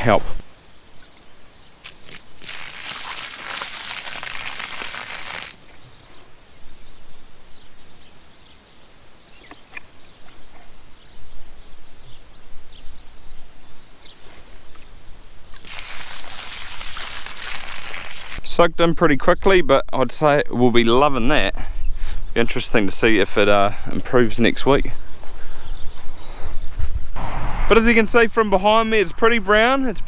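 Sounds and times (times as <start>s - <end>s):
water pouring onto ground: 1.8s - 5.6s, 15.5s - 18.4s.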